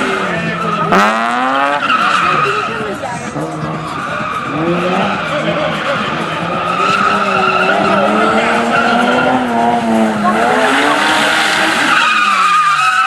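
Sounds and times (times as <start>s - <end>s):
car engine revving: 0.0s - 13.0s
tyres squealing: 0.3s - 13.0s.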